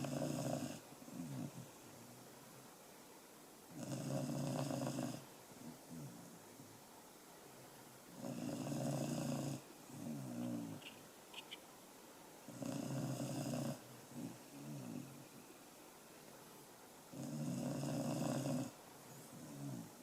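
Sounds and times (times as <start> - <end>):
pet snoring: 0.0 - 1.7, 3.7 - 6.3, 8.2 - 10.8, 12.5 - 15.2, 17.1 - 20.0.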